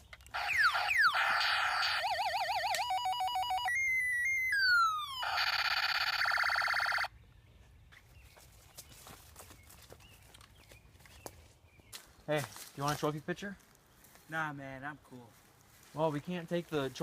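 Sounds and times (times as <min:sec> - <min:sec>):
stepped beeping tones: 0:00.4 - 0:07.1
warbling electronic tone: 0:00.4 - 0:07.1.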